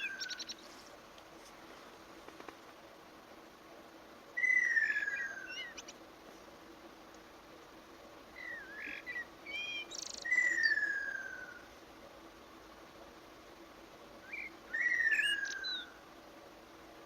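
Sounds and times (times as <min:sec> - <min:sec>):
bird chirps and twitters: 0:00.0 - 0:00.7, 0:04.4 - 0:06.0, 0:08.4 - 0:11.6, 0:14.3 - 0:15.9.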